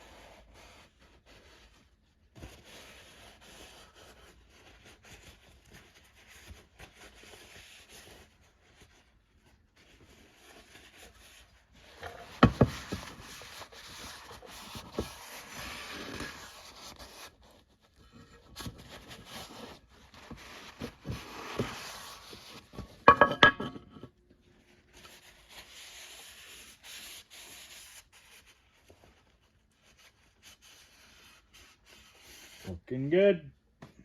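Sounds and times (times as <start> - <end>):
towel wiping inside metal cover: 9.8 - 17.3, 19.0 - 23.6.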